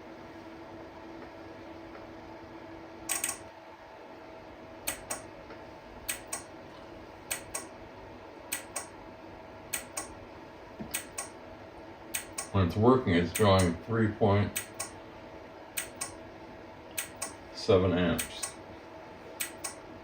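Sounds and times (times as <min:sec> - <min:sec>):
turn signal flasher clicking: 0:06.1 - 0:06.5, 0:07.3 - 0:07.7, 0:09.7 - 0:10.1, 0:10.9 - 0:11.3, 0:12.1 - 0:12.5, 0:14.6 - 0:15.0, 0:15.8 - 0:16.2, 0:17.0 - 0:17.4, 0:19.4 - 0:19.8.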